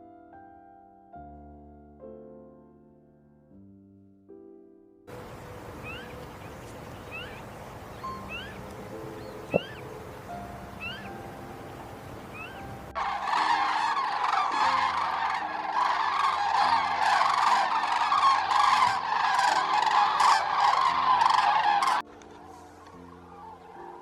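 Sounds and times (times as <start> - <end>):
faint bird chirps: 5.1 - 24.0
flock of birds calling: 5.1 - 24.0.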